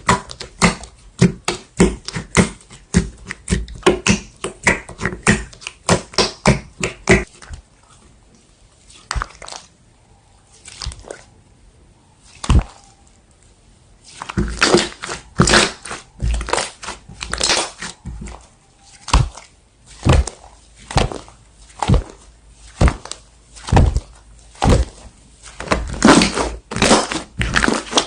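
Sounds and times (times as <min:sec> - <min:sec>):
slime squished by hand: 0:00.0 - 0:09.9, 0:10.5 - 0:11.4, 0:12.2 - 0:13.2, 0:14.0 - 0:28.0
crackly crunchy slime pops: 0:14.2 - 0:28.0.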